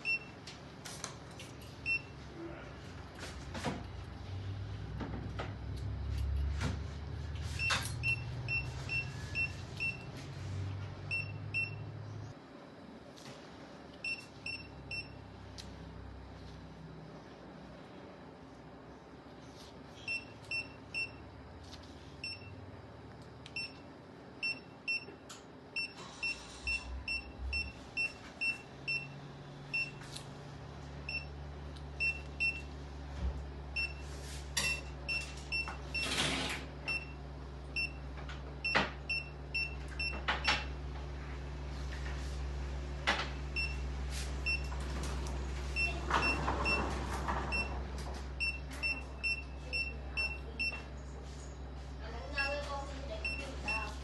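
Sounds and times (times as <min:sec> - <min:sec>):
patient monitor beeps: 0:00.0 - 0:00.4, 0:01.8 - 0:02.2, 0:07.5 - 0:10.2, 0:11.1 - 0:11.9, 0:14.0 - 0:15.2, 0:20.0 - 0:21.3, 0:22.2 - 0:22.6, 0:23.5 - 0:23.8, 0:24.4 - 0:25.2, 0:25.8 - 0:30.0, 0:31.0 - 0:31.4, 0:32.0 - 0:32.7, 0:33.8 - 0:36.2, 0:36.9 - 0:37.2, 0:37.8 - 0:40.7, 0:43.6 - 0:43.8, 0:44.4 - 0:44.7, 0:45.8 - 0:47.8, 0:48.4 - 0:50.9, 0:53.1 - 0:54.0.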